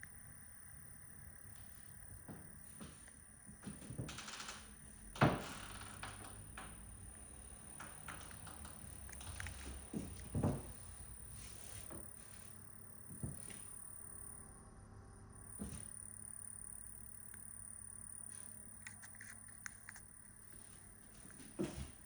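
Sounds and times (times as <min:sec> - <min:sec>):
fridge high-pitched whine: 0:00.0 - 0:22.0
knocks and rustles: 0:03.6 - 0:12.1, 0:21.3 - 0:22.0.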